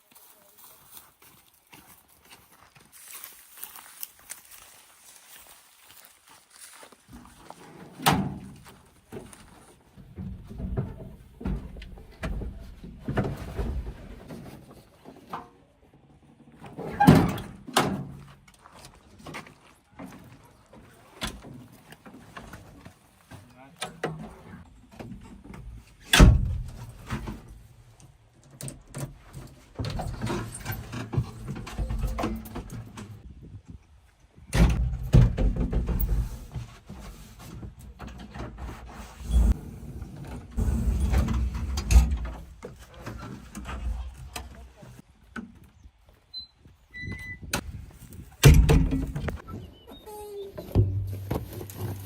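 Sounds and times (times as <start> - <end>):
backhoe bucket thumping: 34.6 - 36.2, 48.4 - 49.4, 50.7 - 52.0.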